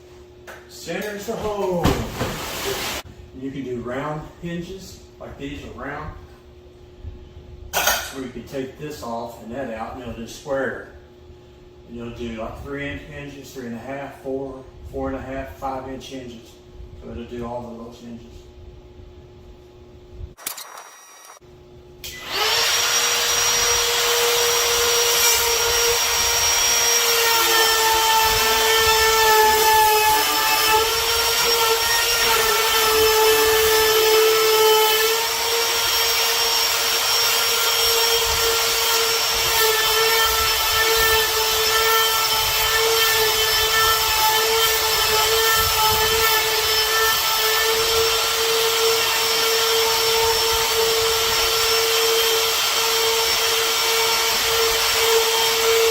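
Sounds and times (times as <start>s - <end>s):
router whining cutting wood: 22.0s - 55.9s.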